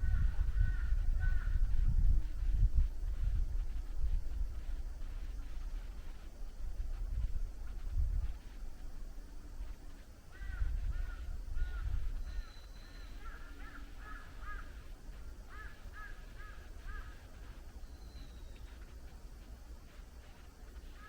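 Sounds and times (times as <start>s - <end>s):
low rumble of wind: 0.0s - 21.0s
bird calling: 10.3s - 14.9s.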